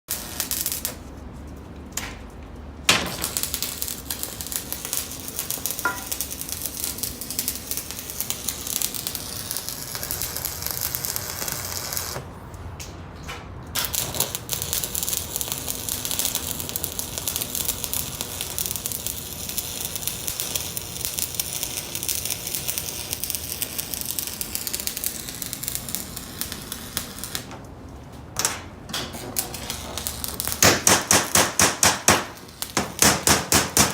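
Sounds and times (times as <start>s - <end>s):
arc welding crackling sizzle: 0.1s - 2.1s, 2.9s - 12.4s, 13.8s - 27.7s, 28.3s - 33.9s.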